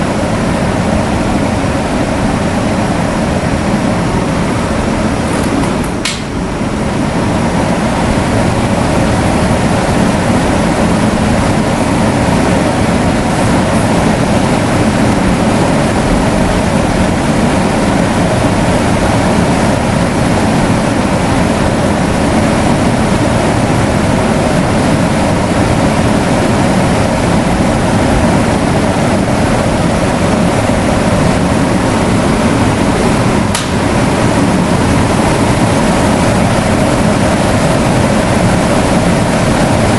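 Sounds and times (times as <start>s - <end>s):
electric fan running: 0.0s - 39.9s
fan switch click: 5.2s - 6.4s, 33.5s - 33.9s.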